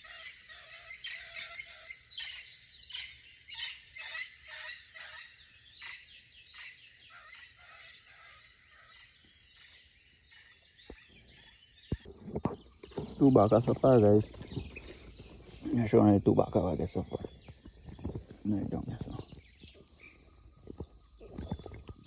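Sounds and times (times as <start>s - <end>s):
birds chattering calls: 0.0s - 22.0s.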